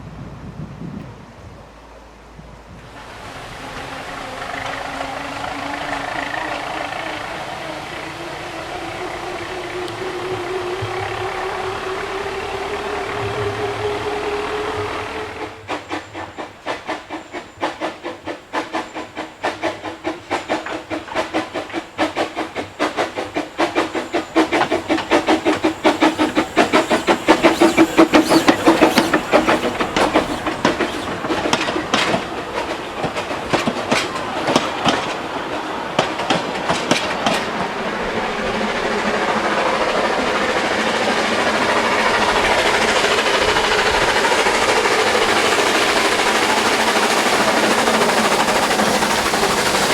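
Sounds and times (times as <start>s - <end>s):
train rushing noise: 0.0s - 49.9s
train clicking over track: 2.8s - 49.9s.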